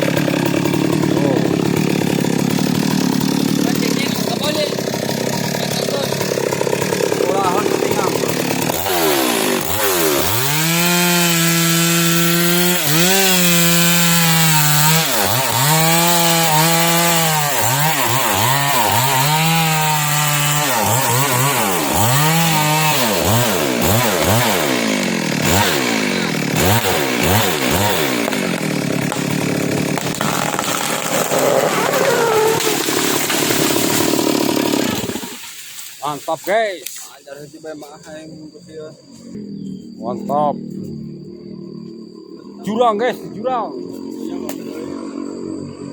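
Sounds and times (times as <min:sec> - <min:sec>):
chainsaw cutting wood: 0:00.0 - 0:36.2.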